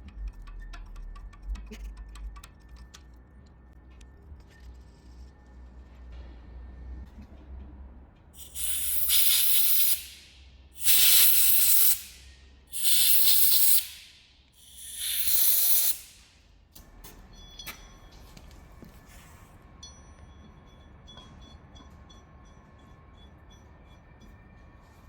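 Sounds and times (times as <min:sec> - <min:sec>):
air blowgun hissing: 0:08.4 - 0:16.3.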